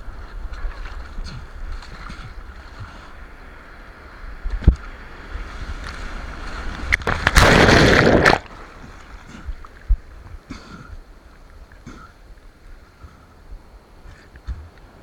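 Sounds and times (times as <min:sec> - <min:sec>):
ocean water splashing in surf: 0:00.5 - 0:10.0
loud rush of water: 0:04.0 - 0:08.9.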